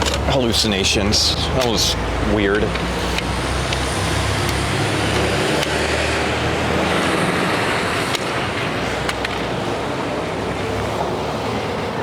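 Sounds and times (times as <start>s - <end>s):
vehicles passing: 0.0s - 12.0s.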